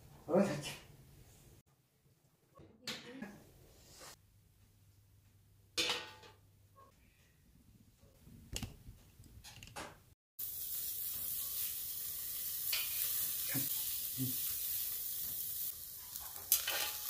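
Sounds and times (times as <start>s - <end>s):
meat sizzling on a grill: 10.4s - 17.0s.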